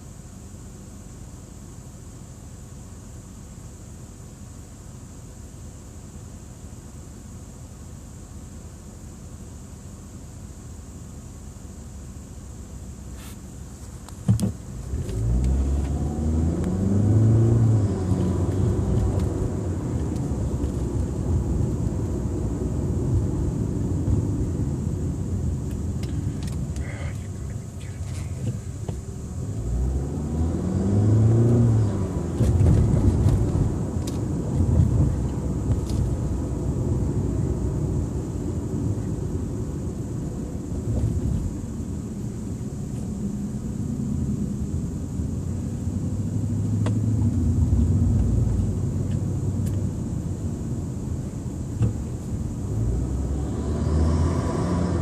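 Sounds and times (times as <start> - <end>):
car engine accelerating: 14.2 - 55.0.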